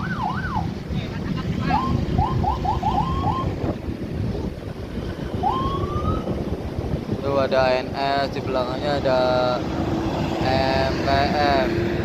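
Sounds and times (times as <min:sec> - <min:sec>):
police siren whooping: 0:00.0 - 0:00.7, 0:01.7 - 0:03.6, 0:05.3 - 0:06.4
heavy traffic noise: 0:00.0 - 0:12.0.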